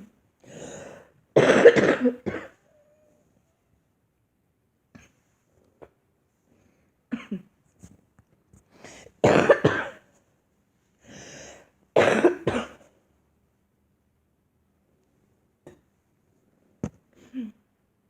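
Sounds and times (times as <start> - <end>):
girl coughing: 1.4 - 2.6, 7.1 - 7.5, 9.2 - 10.1, 12.0 - 12.9.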